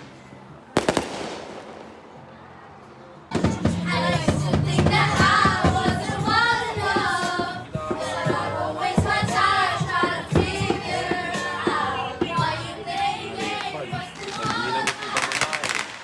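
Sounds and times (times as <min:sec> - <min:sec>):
sharp cracks: 0:00.8 - 0:02.3
loud music with singing: 0:03.3 - 0:15.8.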